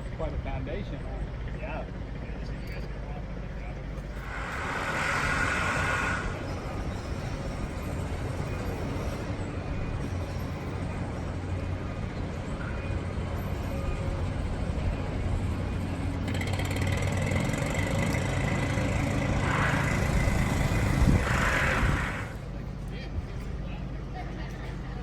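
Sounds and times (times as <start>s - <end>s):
vehicle engine humming: 0.0s - 25.0s.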